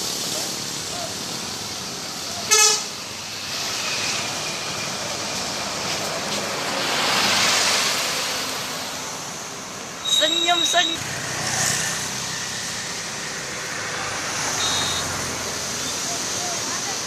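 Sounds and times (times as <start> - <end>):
traffic rushing past: 0.0 - 17.0
car horn beep: 2.5 - 2.9, 10.0 - 11.0, 14.6 - 15.2.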